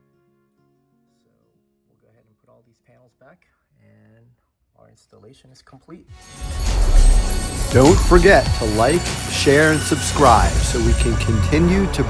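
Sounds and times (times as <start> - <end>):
faint instrumental music: 6.2 - 12.0.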